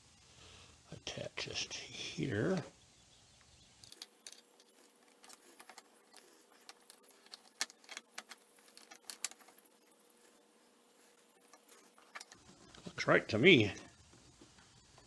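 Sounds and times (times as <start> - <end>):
faint steady hum: 0.0 - 15.0
light metallic clicks and rattles: 3.8 - 9.9.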